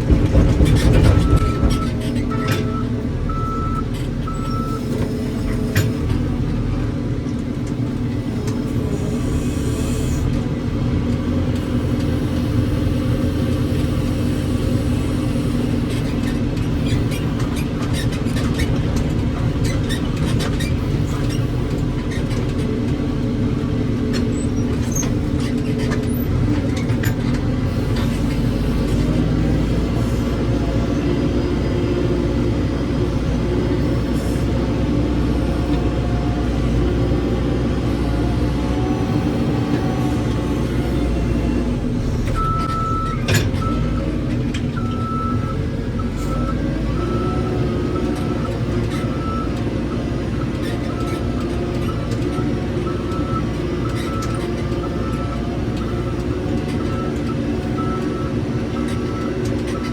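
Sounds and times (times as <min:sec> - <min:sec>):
sharp clanks and knocks: 0:00.0 - 0:02.8
diesel engine running: 0:00.0 - 0:59.9.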